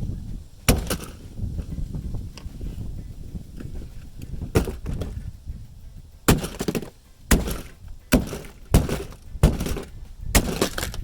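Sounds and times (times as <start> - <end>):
hammer blows on plastic: 6.3 - 11.0
plastic cracking: 6.4 - 11.0.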